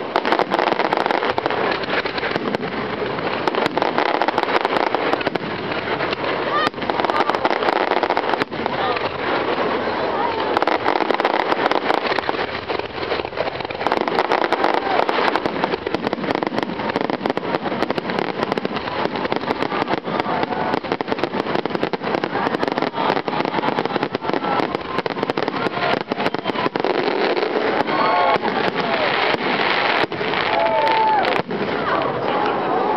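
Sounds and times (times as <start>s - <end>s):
fireworks cracking and popping: 0.0s - 32.9s.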